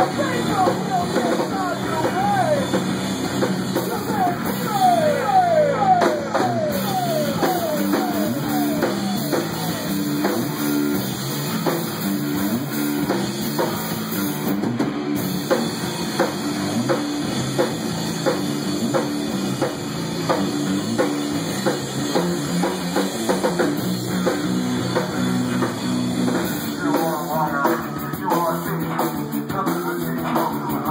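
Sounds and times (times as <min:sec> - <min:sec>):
bass and guitar: 0:00.0 - 0:30.9
drum kit beat: 0:00.0 - 0:30.9
quick falling guitar notes: 0:03.8 - 0:10.5.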